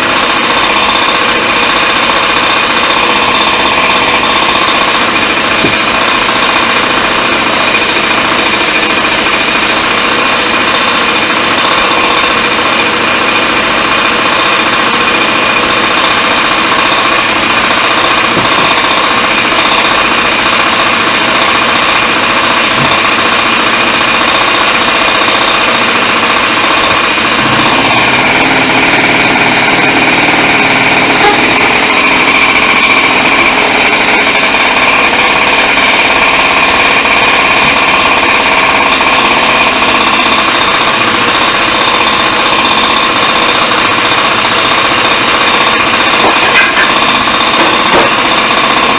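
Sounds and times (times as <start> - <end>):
two-stroke scooter engine running: 0.0 - 48.9.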